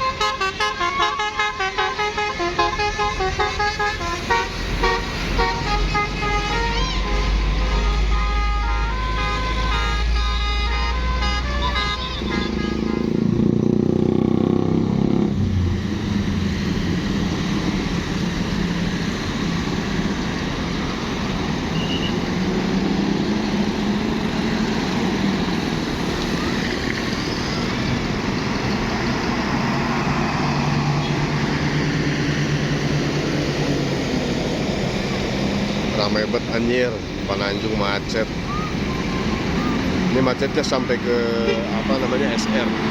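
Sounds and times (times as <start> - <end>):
multi-tone bus horn: 0.0 - 13.5, 21.7 - 22.3, 30.9 - 31.3, 41.1 - 42.1
bus engine rumbling: 0.0 - 42.9.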